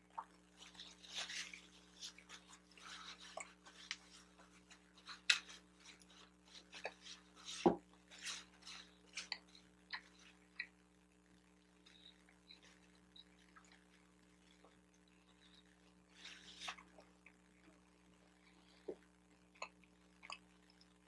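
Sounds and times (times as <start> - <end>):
chewing with wet mouth clicks: 19.5 - 20.9.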